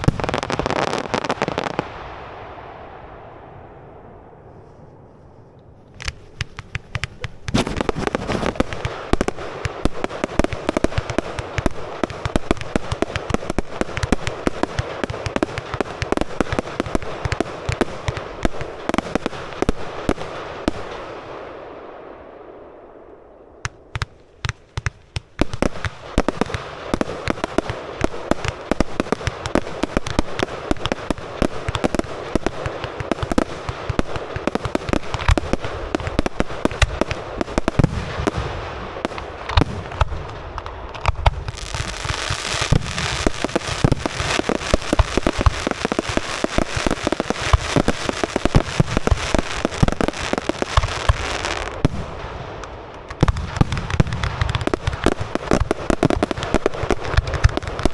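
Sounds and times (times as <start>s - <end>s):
fireworks crackling: 0.0s - 3.1s, 4.4s - 21.1s, 23.6s - 57.9s
firework bangs: 0.0s - 4.4s, 5.9s - 21.3s, 23.6s - 57.9s
firework launches: 5.9s - 9.4s.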